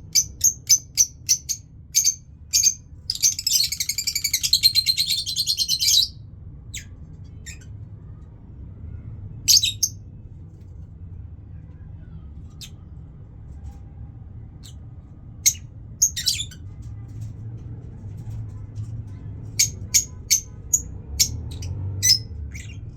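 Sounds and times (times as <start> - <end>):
pet birds chirping: 0.0 - 7.7, 9.5 - 10.0, 14.6 - 14.8, 15.4 - 16.8, 19.6 - 22.9
faint low hum: 0.0 - 22.9.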